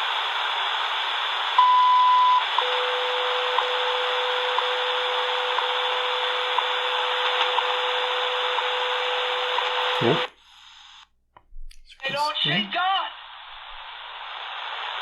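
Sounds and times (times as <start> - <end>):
radio static hiss: 9.1 - 11.1, 11.8 - 15.0.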